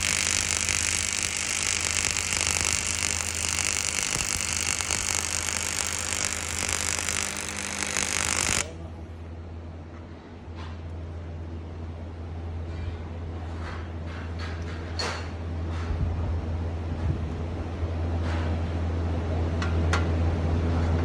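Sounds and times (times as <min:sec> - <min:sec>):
welding arc crackling and hissing: 0:00.0 - 0:08.8
steady low hum: 0:00.0 - 0:09.6.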